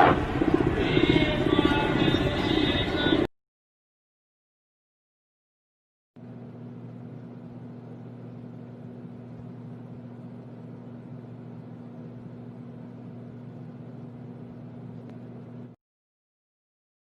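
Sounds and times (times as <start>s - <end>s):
mechanical hum: 0.0s - 3.3s, 6.2s - 15.8s.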